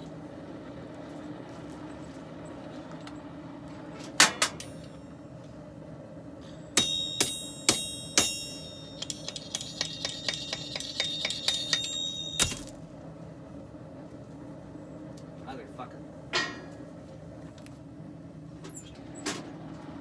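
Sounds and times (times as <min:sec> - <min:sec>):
hammer ringing on anvil: 0:06.8 - 0:12.8.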